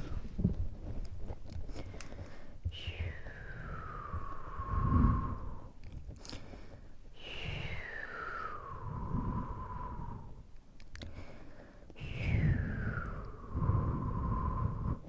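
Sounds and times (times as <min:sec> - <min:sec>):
breath blowing with faint whistle: 0:02.8 - 0:05.8, 0:07.2 - 0:10.5, 0:12.0 - 0:15.0.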